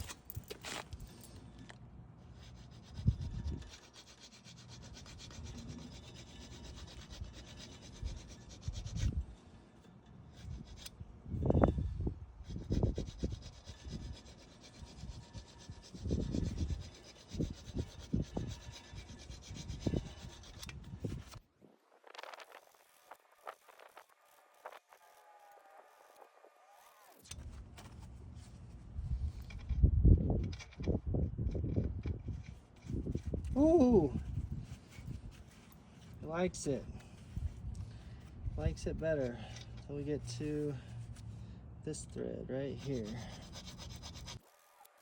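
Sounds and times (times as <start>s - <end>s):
hands rubbing and scraping: 42.7s - 45.0s.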